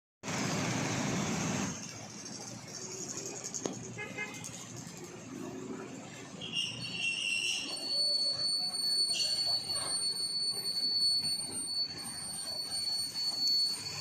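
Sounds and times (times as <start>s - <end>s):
high-pitched metal squealing: 6.3s - 14.0s.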